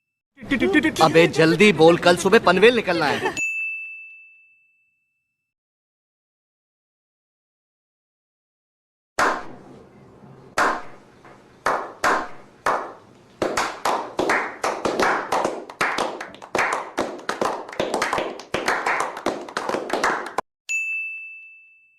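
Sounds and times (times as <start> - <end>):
bright ringing ding: 3.4 - 5.4, 20.7 - 21.9
hand clapping: 11.6 - 20.4.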